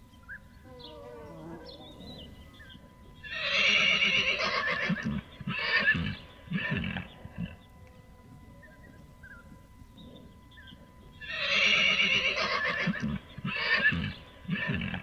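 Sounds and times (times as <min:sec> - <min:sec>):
horse neighing: 0:03.2 - 0:07.6, 0:11.2 - 0:15.0.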